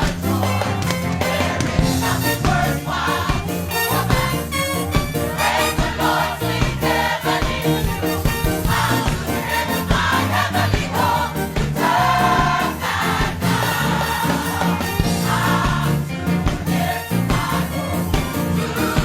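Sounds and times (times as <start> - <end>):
choir singing gospel music: 0.0 - 19.0.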